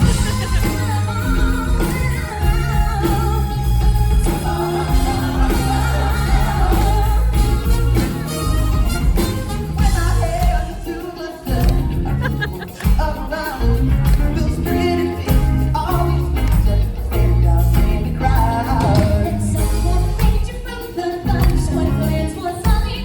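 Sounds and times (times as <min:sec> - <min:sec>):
pop song with singing: 0:00.0 - 0:23.0.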